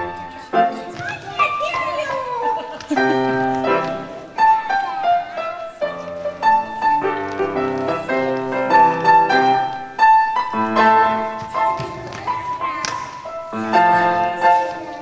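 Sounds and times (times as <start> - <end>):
piano melody over chords: 3.0 - 11.6.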